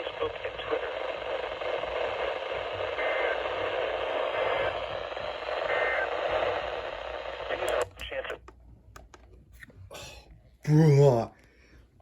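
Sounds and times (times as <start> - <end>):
radio static hiss: 0.0 - 8.4.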